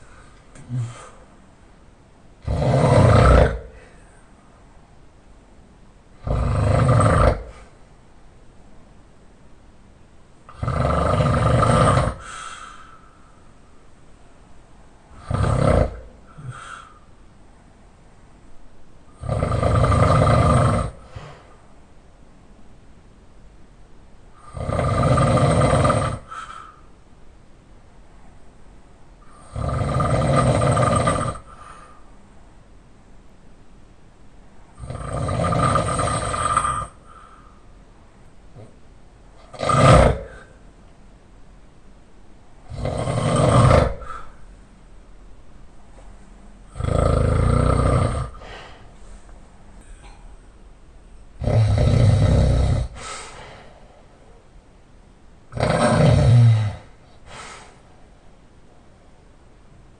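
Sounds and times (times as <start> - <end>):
loud open-mouth snoring: 2.4 - 3.8, 6.2 - 7.7, 10.5 - 12.5, 15.1 - 16.9, 19.1 - 21.4, 24.4 - 26.8, 29.3 - 31.9, 34.8 - 37.3, 39.4 - 40.6, 42.7 - 44.4, 46.7 - 48.8, 51.4 - 53.4, 55.5 - 57.5.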